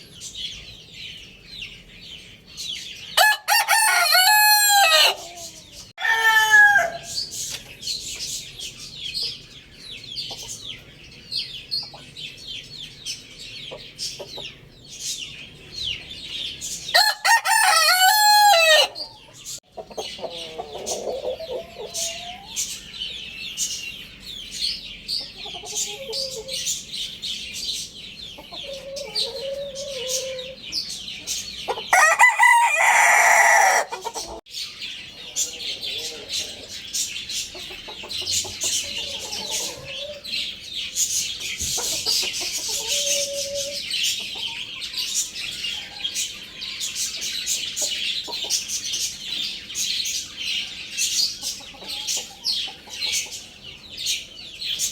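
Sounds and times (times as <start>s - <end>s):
rooster crowing: 3.2s - 7.2s, 17.0s - 19.2s, 31.9s - 34.4s.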